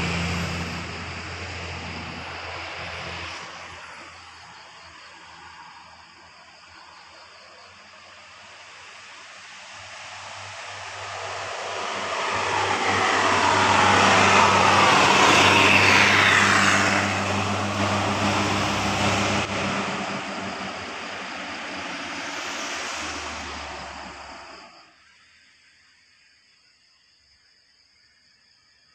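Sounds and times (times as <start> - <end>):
vehicle driving past: 0.0 - 4.4, 9.7 - 24.8.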